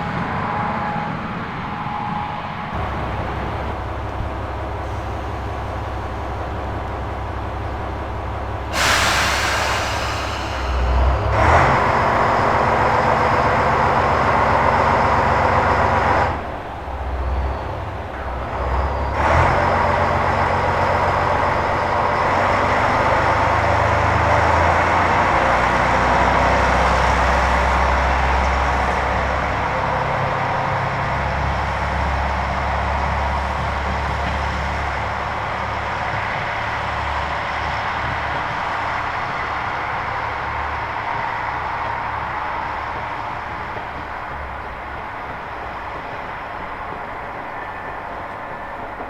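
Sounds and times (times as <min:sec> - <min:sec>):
train wheel and engine rush: 0:00.0 - 0:49.0
low engine drone: 0:02.7 - 0:05.4.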